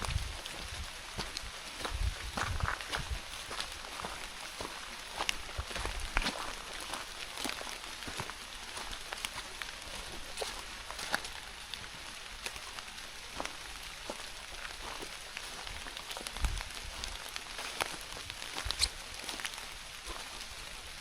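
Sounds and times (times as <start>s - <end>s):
rain falling: 0.0s - 21.0s.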